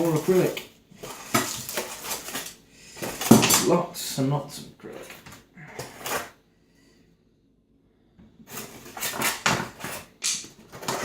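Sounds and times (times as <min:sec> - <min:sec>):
packaging rustling: 0:00.0 - 0:03.8, 0:08.5 - 0:11.0
plastic parts clattering: 0:00.0 - 0:03.8, 0:05.0 - 0:06.3, 0:08.5 - 0:11.0.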